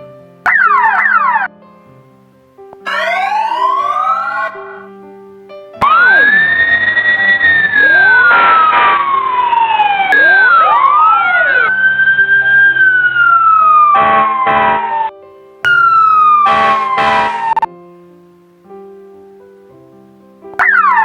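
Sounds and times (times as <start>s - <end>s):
short siren blasts: 0.5s - 1.5s, 2.8s - 4.9s, 5.8s - 15.1s, 15.7s - 17.7s
siren wailing: 0.5s - 1.5s, 2.8s - 4.9s, 5.8s - 15.1s, 15.7s - 17.7s, 20.6s - 21.0s.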